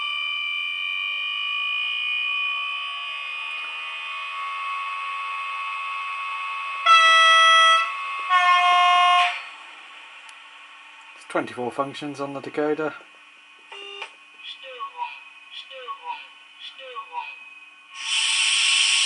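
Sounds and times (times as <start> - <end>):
electric locomotive whine: 0.0 - 19.0
locomotive horn blasts: 6.8 - 9.5.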